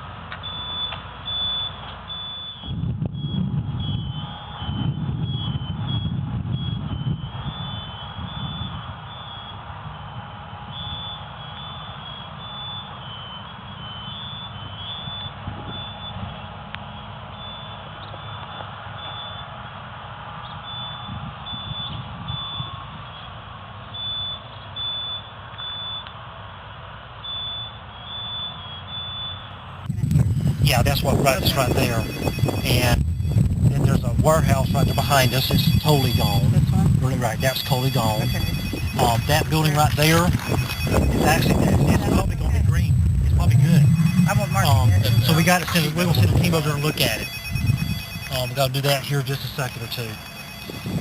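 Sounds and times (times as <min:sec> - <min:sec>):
vehicle low rumble: 0:00.0 - 0:51.0
short high-pitched beeps: 0:00.4 - 0:10.2, 0:27.3 - 0:51.0.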